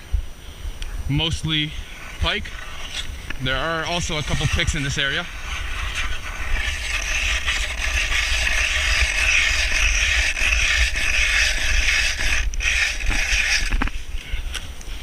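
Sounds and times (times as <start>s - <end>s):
ice auger grinding through ice: 1.9s - 13.9s.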